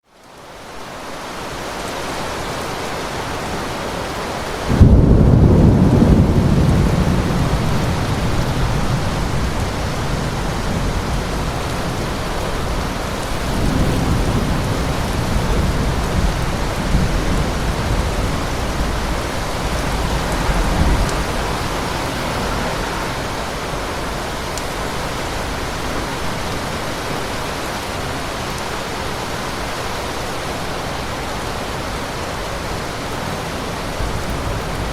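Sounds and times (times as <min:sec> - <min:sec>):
steady rain: 0:00.0 - 0:34.9
thunder rumbling: 0:04.7 - 0:26.6, 0:33.7 - 0:34.9.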